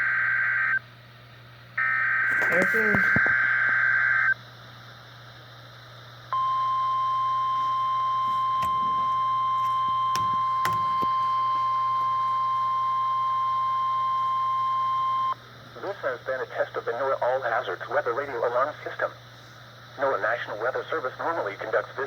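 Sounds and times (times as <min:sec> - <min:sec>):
faint hiss and hum: 0:00.1 - 0:22.0
steady alarm tone: 0:06.4 - 0:15.4.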